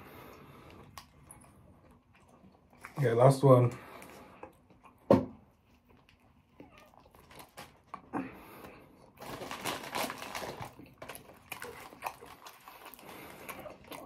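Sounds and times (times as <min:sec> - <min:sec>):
chewing crunchy potato chips: 0:05.7 - 0:14.0.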